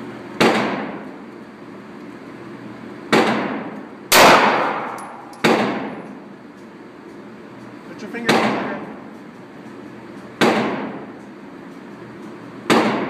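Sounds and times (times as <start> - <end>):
handgun shots with ringing echo: 3.1 - 6.0.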